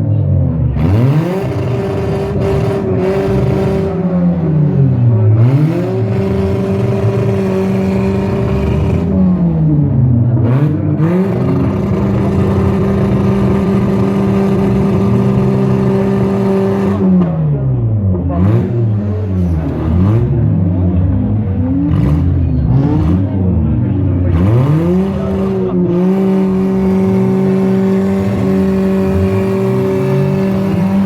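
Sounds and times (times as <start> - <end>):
car engine revving: 0.0 - 31.0.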